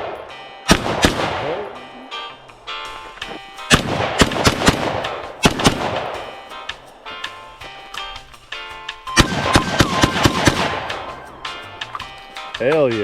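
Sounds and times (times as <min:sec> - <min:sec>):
gunshots with ringing echo: 0:00.0 - 0:02.4, 0:03.7 - 0:06.5, 0:09.2 - 0:11.2
music: 0:00.0 - 0:13.0.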